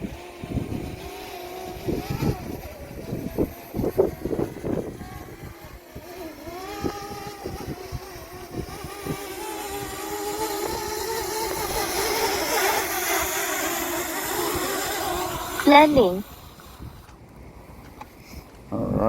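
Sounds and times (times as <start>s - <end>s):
wind buffeting microphone: 0.0s - 17.1s
drone propellers buzzing: 0.0s - 18.2s.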